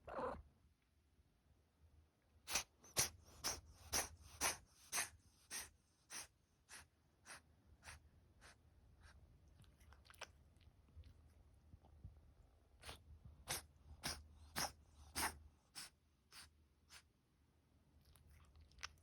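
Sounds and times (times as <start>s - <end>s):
cat sneezing: 2.4s - 8.6s, 12.8s - 17.1s.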